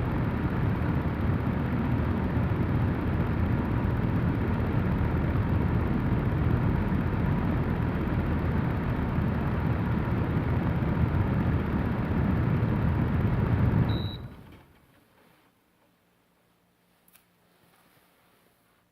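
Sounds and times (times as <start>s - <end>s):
fan blowing air: 0.0s - 18.9s
short high beep: 13.9s - 14.3s.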